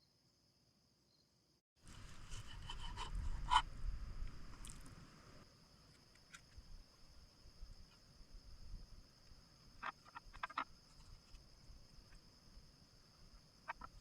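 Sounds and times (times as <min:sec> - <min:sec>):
high insect-like tone: 0:06.0 - 0:14.0.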